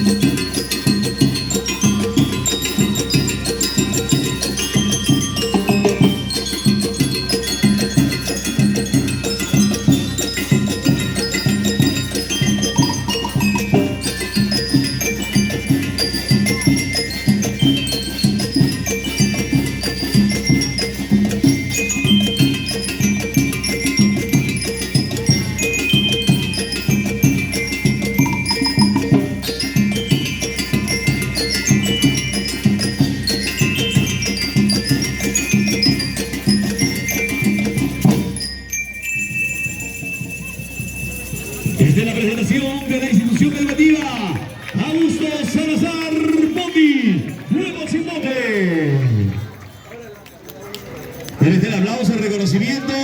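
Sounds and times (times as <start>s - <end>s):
steady drum beat: 0.0s - 38.6s
bell-lyres ringing a melody: 0.0s - 53.0s.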